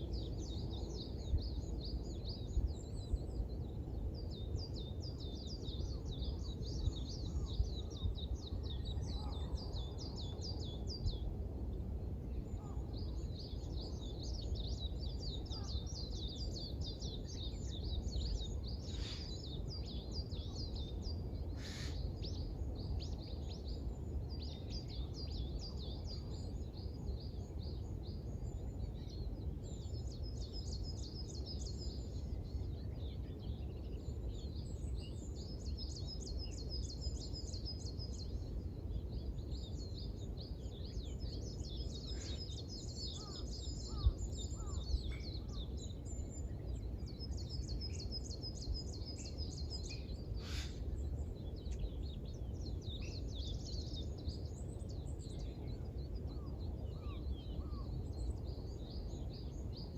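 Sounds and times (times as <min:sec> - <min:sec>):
small birds chirping: 0:12.3 - 0:59.9.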